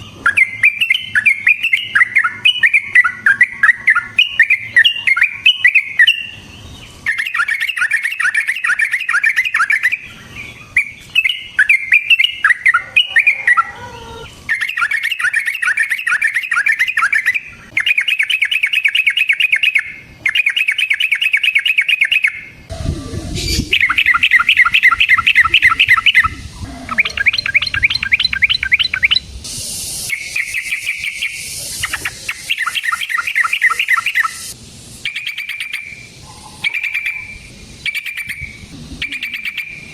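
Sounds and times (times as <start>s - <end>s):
bulbul singing chattering phrases: 0.0s - 39.9s.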